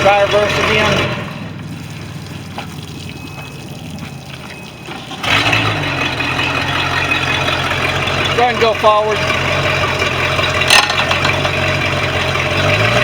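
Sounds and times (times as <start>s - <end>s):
boat engine running loudly: 0.0s - 1.6s, 4.4s - 13.0s
water trickling: 0.0s - 13.0s.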